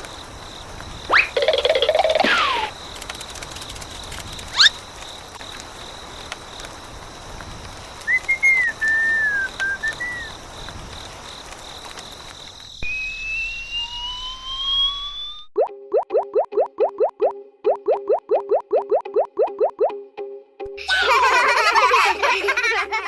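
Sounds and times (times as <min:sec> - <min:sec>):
slide whistle glide: 0:01.1 - 0:02.7, 0:08.1 - 0:10.3, 0:12.8 - 0:15.6
whistle sound effects: 0:01.1 - 0:02.7, 0:08.1 - 0:10.3, 0:12.8 - 0:17.3.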